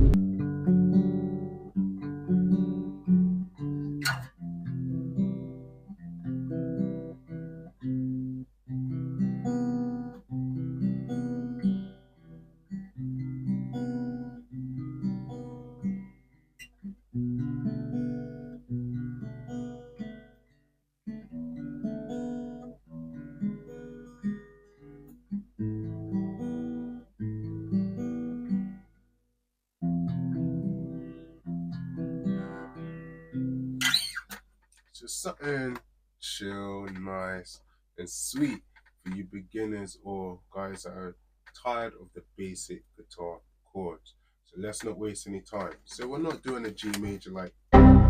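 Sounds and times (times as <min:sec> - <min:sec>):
acoustic guitar chords: 0:00.0 - 0:16.3, 0:29.8 - 0:33.8, 0:47.7 - 0:48.0.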